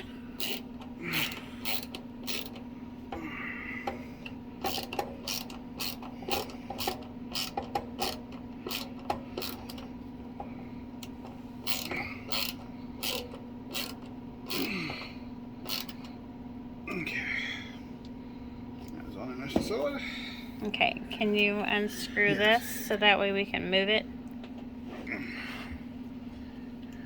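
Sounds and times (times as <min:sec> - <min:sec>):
steady low hum: 0:00.0 - 0:27.0
hand tools clicking and knocking: 0:00.4 - 0:03.2, 0:03.8 - 0:09.8, 0:11.0 - 0:16.1.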